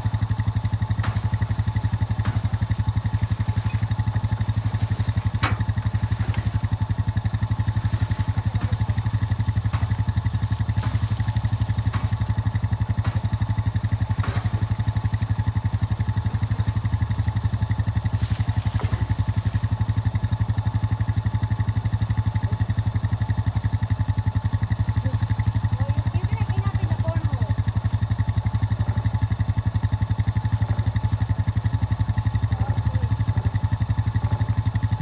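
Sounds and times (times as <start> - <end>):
small engine running: 0.0 - 35.0
light clicks and knocks: 0.3 - 20.0.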